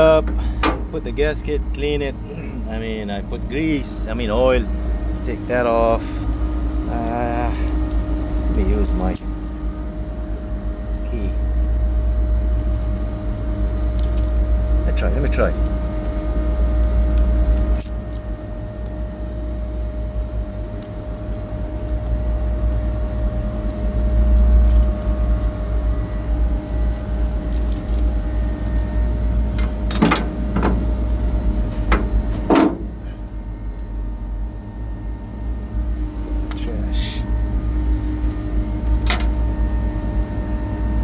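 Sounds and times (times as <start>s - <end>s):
constant hum: 0.0s - 41.0s
steady low rumble: 0.0s - 41.0s
sharp knocks: 31.9s - 33.0s.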